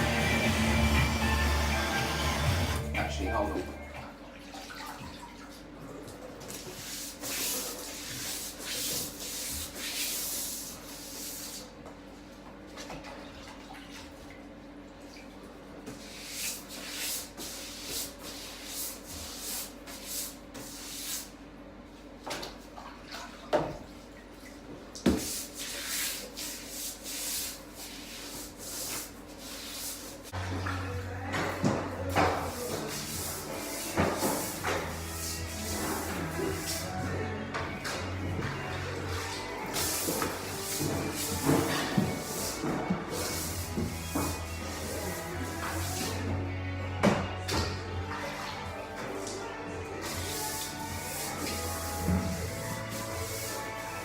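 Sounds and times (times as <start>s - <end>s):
sandpaper rubbing a surface: 6.7s - 11.7s, 16.1s - 21.3s, 25.2s - 30.3s, 32.4s - 37.0s, 39.7s - 46.2s, 50.0s - 54.0s.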